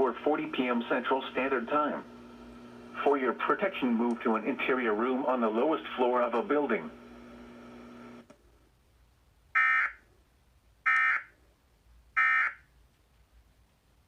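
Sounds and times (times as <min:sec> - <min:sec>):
faint steady hum: 0:00.0 - 0:12.8
click: 0:03.1 - 0:04.3.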